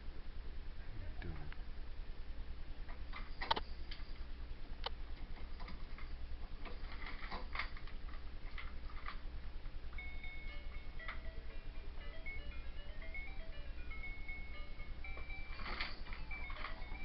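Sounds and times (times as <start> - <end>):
steady low hum: 0.0 - 17.0
thin high tone: 10.0 - 17.0.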